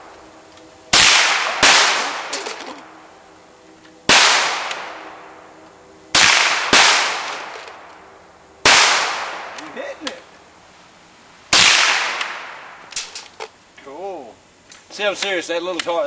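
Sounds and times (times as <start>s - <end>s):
gunshots with long echo: 0.9s - 2.4s, 4.1s - 5.4s, 6.1s - 7.9s, 8.6s - 9.6s, 11.5s - 12.8s.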